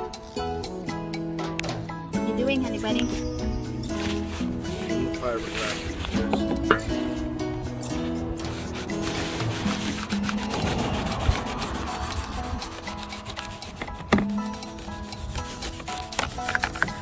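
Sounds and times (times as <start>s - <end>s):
scrubbing by hand on a roof: 7.9s - 17.0s.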